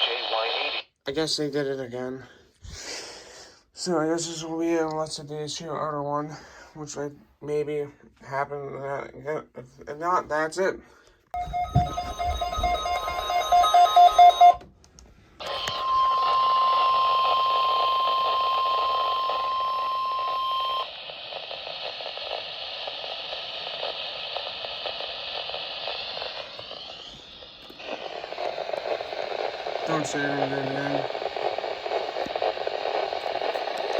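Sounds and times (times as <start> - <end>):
radio static hiss: 0.0 - 1.0, 15.4 - 33.9
pulsing electronic alarm beep: 11.4 - 14.6, 15.5 - 20.9
steady warning alarm tone: 11.4 - 14.6, 15.4 - 21.0.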